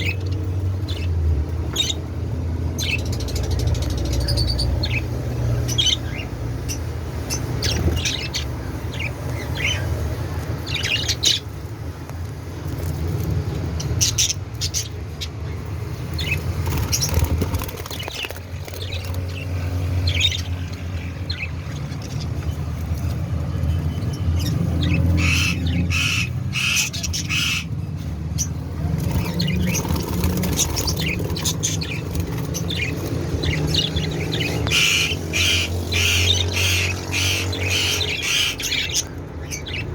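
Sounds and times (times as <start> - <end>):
budgerigars chirping and squawking: 0.0 - 11.7, 12.7 - 39.9.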